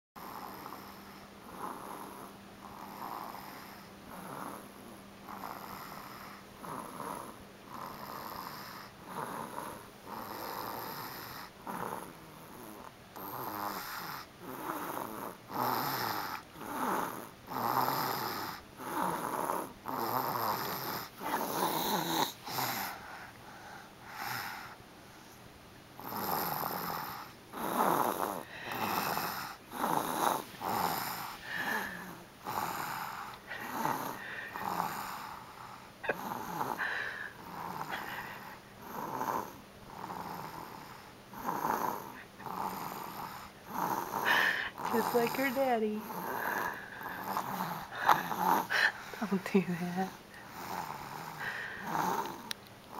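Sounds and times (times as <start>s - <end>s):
person snoring: 0.2s - 24.8s, 26.0s - 52.6s.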